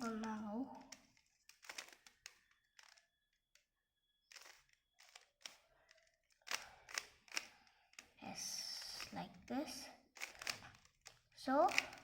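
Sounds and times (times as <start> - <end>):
puzzle cube clicking when turned: 0.0 - 3.6, 4.3 - 8.2, 10.1 - 12.0.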